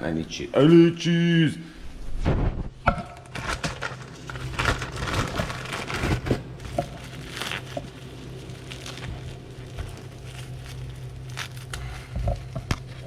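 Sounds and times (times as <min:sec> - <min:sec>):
steady low hum: 0:00.0 - 0:13.0
plastic packaging crinkling: 0:03.2 - 0:13.0.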